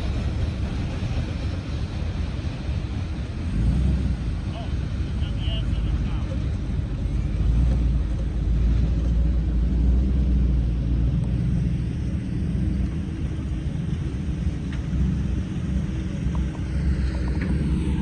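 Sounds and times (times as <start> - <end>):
freight cars rumbling past: 0.0 - 18.0.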